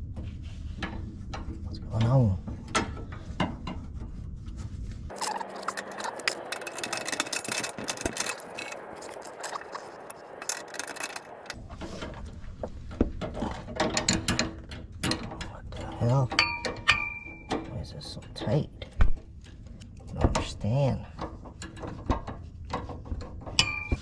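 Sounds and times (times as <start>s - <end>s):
tool scraping metal: 5.1s - 11.6s.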